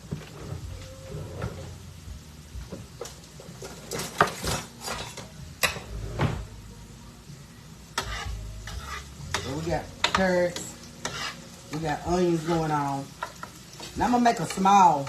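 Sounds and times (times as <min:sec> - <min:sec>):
utensils and cookware clinking: 0:03.0 - 0:06.5, 0:08.0 - 0:15.0.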